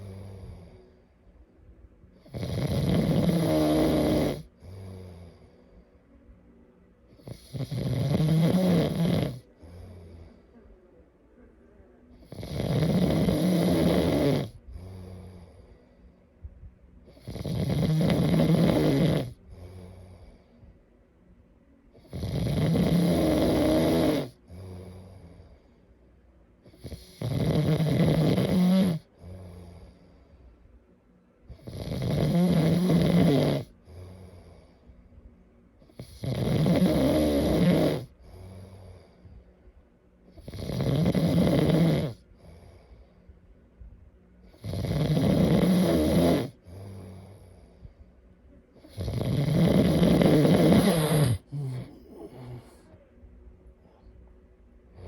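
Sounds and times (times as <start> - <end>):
quiet breaths: 0.0 - 55.0
person snoring: 2.2 - 5.5, 7.2 - 10.6, 12.2 - 15.7, 17.1 - 20.5, 22.0 - 25.5, 26.7 - 30.0, 31.5 - 34.7, 35.9 - 39.1, 40.4 - 42.9, 44.5 - 47.8, 48.8 - 53.0.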